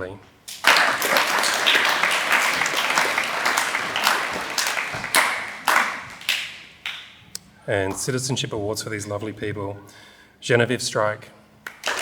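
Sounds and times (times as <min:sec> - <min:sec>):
audience applauding: 0:00.5 - 0:07.2, 0:11.7 - 0:12.0.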